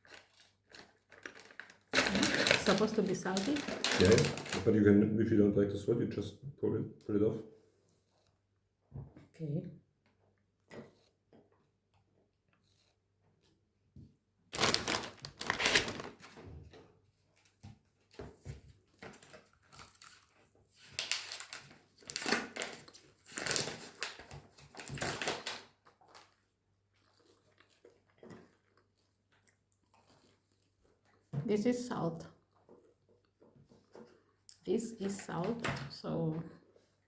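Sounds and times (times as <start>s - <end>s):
pretzel crinkling and tearing: 0.0s - 4.7s, 14.5s - 16.4s, 19.0s - 31.0s.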